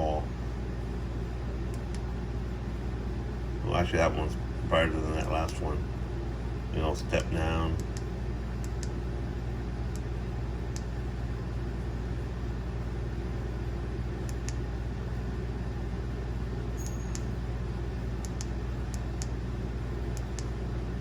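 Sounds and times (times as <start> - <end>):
low mechanical hum: 0.0 - 21.0
faint light clicks: 7.8 - 9.0, 18.2 - 19.4, 20.1 - 20.5.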